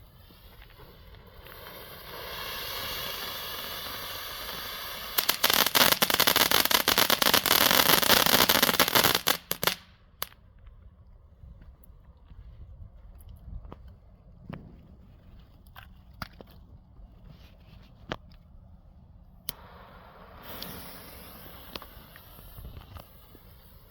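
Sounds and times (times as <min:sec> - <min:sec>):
firework fountain hissing: 0:00.0 - 0:09.8, 0:19.5 - 0:23.9
firework crackling: 0:00.0 - 0:10.3, 0:19.5 - 0:23.9.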